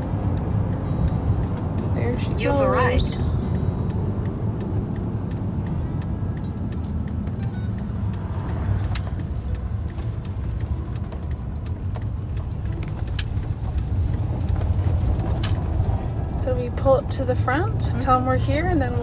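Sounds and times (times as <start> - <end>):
engine and road rumble: 0.0 - 19.0.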